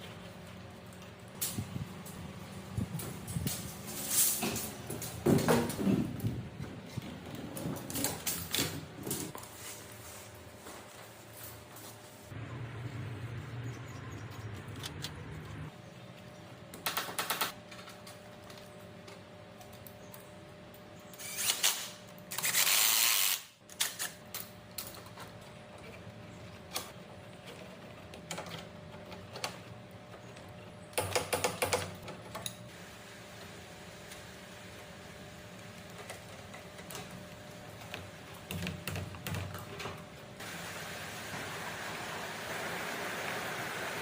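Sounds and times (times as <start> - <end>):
low mechanical hum: 0.0 - 44.0.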